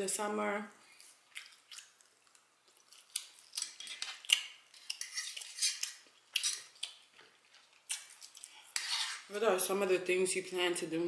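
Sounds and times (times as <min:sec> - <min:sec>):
wet chewing and lip smacking: 0:00.9 - 0:08.7.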